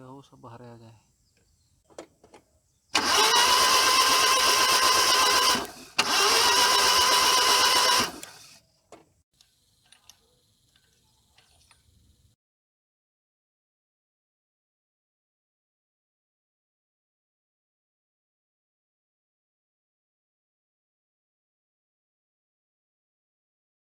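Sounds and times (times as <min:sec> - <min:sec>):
engine cranking on starter: 0:03.0 - 0:08.6.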